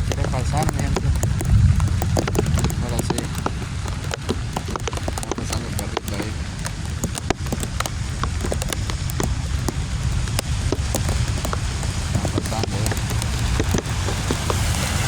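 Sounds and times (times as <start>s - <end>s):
heavy rain falling: 0.0s - 15.0s
raindrops ticking near microphone: 0.0s - 15.0s.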